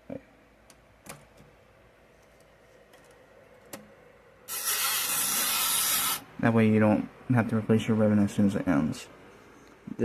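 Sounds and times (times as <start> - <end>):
loud steady hiss: 4.5 - 6.3.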